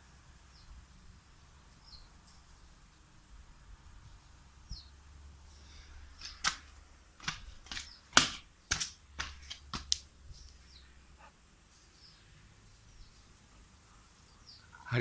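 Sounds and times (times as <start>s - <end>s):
sharp irregular clicks and taps: 7.2s - 10.1s.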